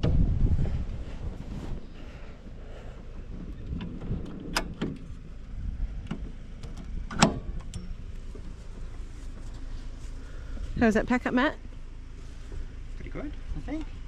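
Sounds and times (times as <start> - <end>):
low wind rumble: 0.0 - 14.0
gear knocks and clunks: 3.2 - 9.7.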